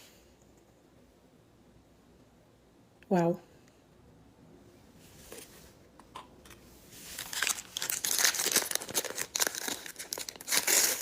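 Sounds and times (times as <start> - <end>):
crinkly packaging torn open: 7.2 - 11.0.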